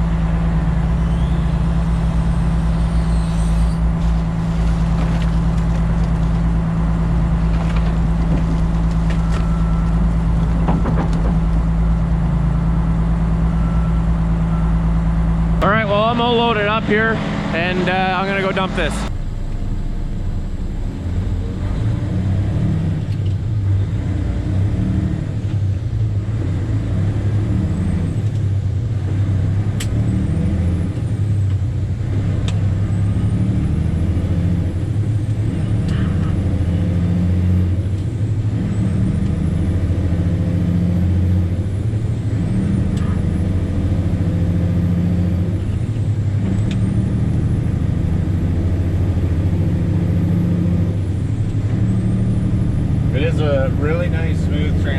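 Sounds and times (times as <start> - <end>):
high gear whine: 0.0 - 23.8
truck diesel engine under load: 0.0 - 54.9.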